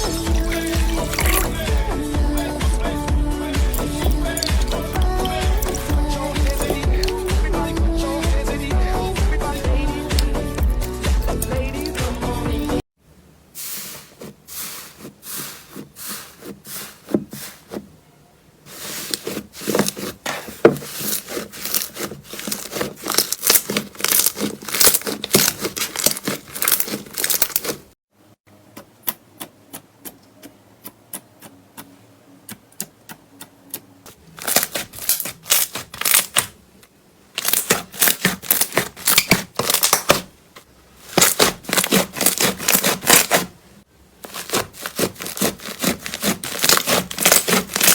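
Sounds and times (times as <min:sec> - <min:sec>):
slime crackling and popping: 0:00.3 - 0:02.9, 0:03.6 - 0:07.3, 0:20.8 - 0:27.9, 0:34.4 - 0:36.5, 0:37.4 - 0:40.3, 0:41.0 - 0:43.4, 0:44.3 - 0:47.9.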